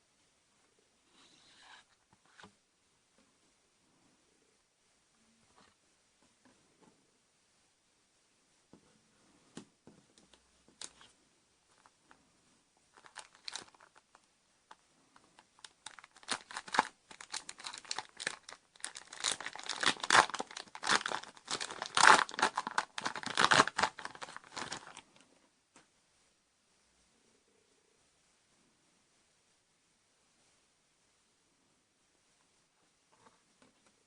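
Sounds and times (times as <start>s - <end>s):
plastic wrapper tearing and crinkling: 12.9s - 14.1s, 15.6s - 25.0s.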